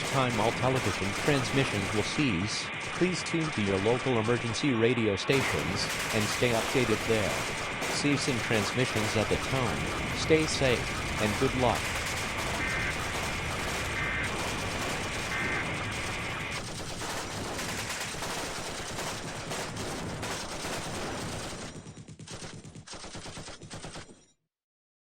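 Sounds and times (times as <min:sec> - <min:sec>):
two-tone data burst: 0:00.0 - 0:16.6
harsh crackling static: 0:00.0 - 0:20.2.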